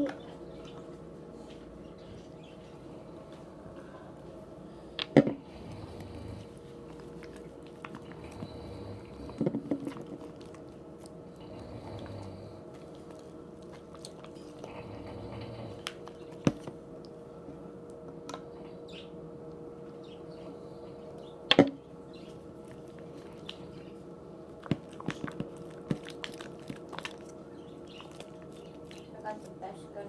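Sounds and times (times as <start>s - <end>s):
faint steady hum: 0.0s - 30.0s
wet sticky slime squishing: 22.6s - 29.5s.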